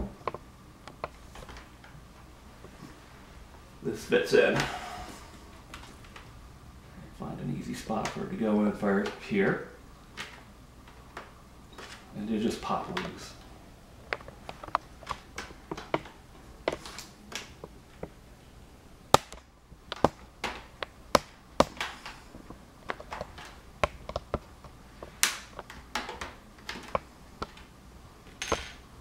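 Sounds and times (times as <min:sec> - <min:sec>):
plastic clips snapping: 0:25.2 - 0:27.7.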